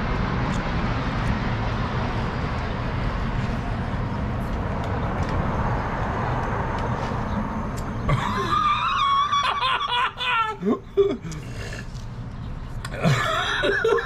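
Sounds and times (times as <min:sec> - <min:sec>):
person squealing and laughing: 0:08.1 - 0:11.4.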